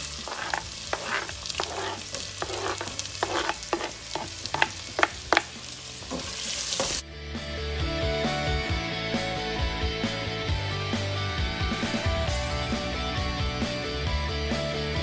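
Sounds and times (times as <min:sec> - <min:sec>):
food sizzling in oil: 0:00.0 - 0:07.0
utensil scraping and tapping pan: 0:00.0 - 0:07.0.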